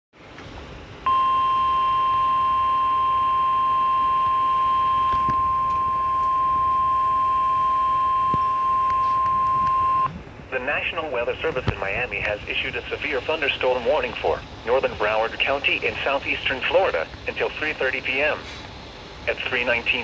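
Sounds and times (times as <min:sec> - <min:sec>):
loud steady alert tone: 0:01.1 - 0:10.1.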